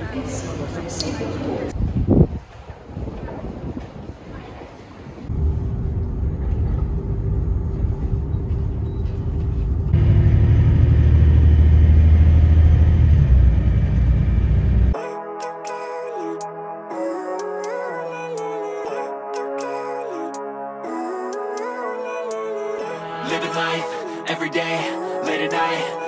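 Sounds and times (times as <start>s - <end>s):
faint constant hum: 4.8s - 10.0s
vehicle rumbling in motion: 5.2s - 15.0s
music: 15.0s - 26.0s.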